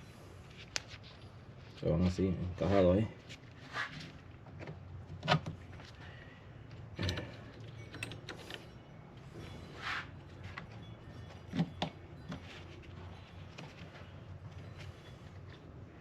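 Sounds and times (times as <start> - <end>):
scraping rustle: 0.4 - 4.3.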